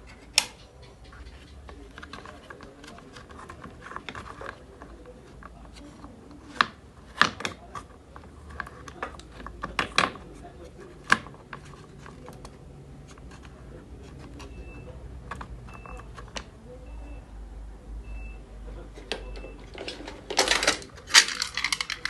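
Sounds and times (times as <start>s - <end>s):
tools and parts clicking: 19.0s - 22.0s.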